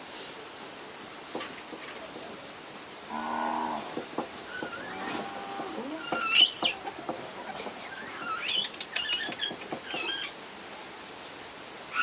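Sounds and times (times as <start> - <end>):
monkeys squeaking: 4.5 - 5.1, 5.9 - 10.4.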